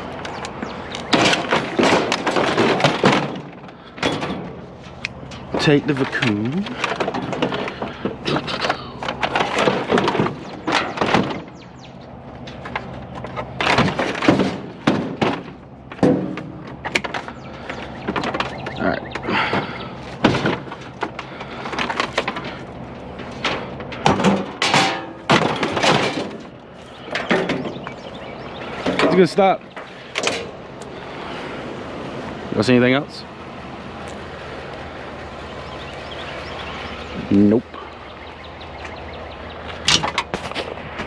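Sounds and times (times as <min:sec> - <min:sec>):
scrap items thunking and rattling: 0:00.0 - 0:30.6, 0:39.7 - 0:41.0.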